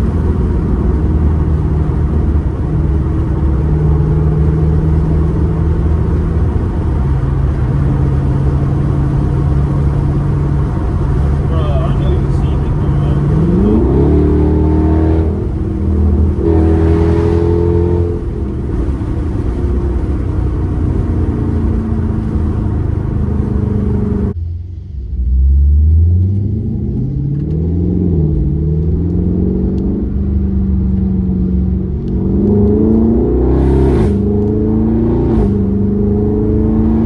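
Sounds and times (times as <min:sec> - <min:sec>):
car engine revving: 0:00.0 - 0:37.0.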